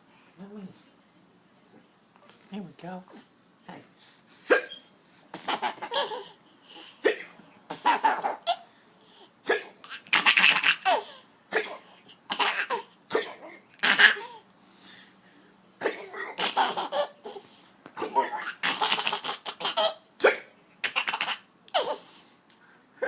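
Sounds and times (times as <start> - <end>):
hiccups: 4.5 - 4.9, 20.2 - 21.3.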